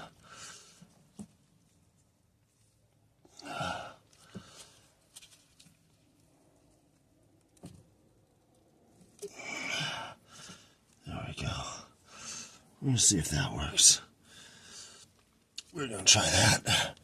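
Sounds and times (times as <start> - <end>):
man sighing: 3.3 - 4.0, 9.2 - 10.1.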